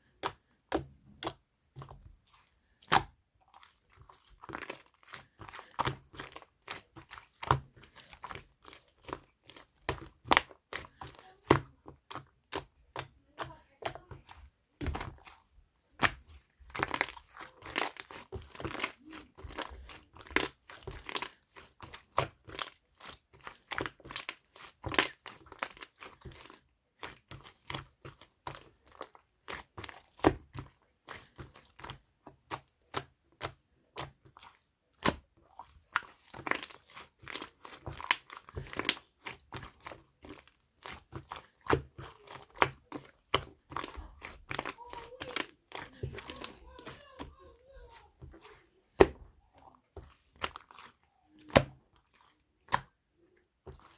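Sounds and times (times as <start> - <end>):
slime clicking and popping: 2.8 - 3.1.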